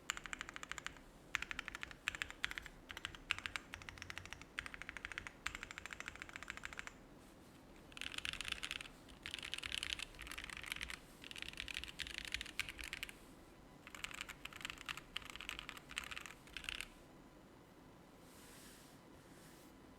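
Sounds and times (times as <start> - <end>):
mechanical keyboard typing: 0.0 - 7.0, 7.8 - 13.2, 13.9 - 16.9.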